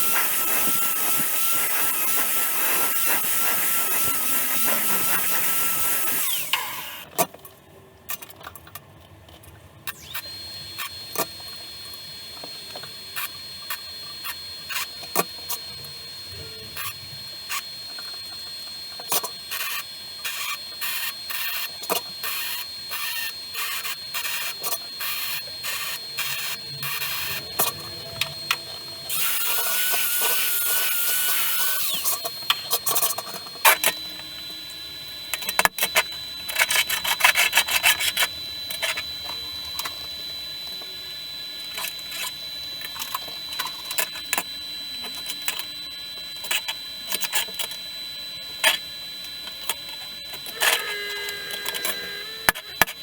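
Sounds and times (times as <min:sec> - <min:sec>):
rasping saw-like strokes: 0:50.5 - 0:52.8.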